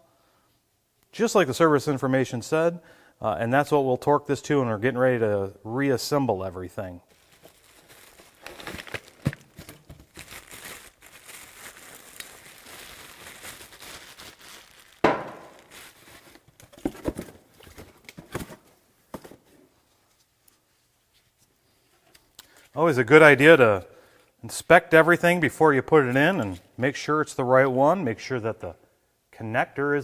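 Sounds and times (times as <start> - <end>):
packaging crinkling: 7.1 - 18.7
sharp knock: 15.0 - 15.5.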